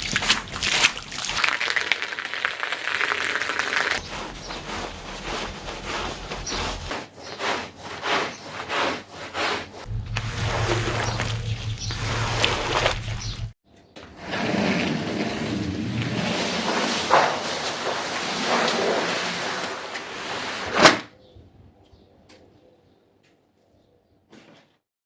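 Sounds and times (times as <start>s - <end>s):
scrubbing wet carpet: 0.0s - 13.4s, 14.2s - 20.6s
machine humming: 9.9s - 13.6s.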